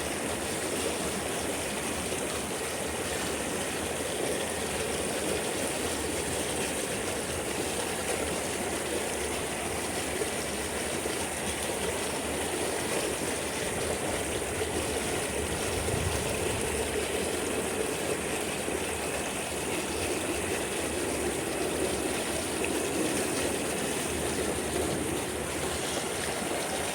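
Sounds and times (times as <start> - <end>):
running water: 0.0 - 26.9.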